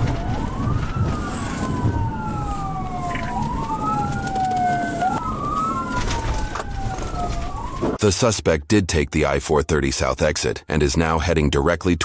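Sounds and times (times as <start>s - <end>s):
low road and engine rumble: 0.0s - 8.0s
police siren wailing: 0.0s - 8.0s.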